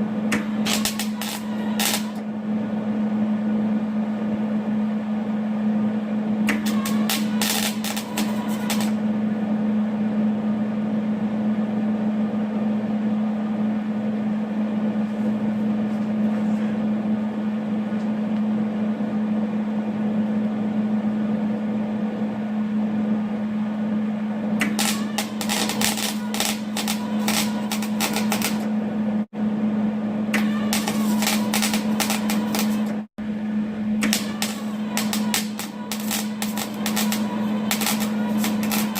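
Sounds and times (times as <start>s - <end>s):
welding hum: 0.0s - 2.5s, 6.4s - 9.2s, 24.6s - 29.3s, 30.3s - 38.9s
welding crackling: 0.3s - 2.2s, 6.5s - 9.0s, 24.6s - 28.7s, 30.4s - 33.0s, 34.0s - 38.9s.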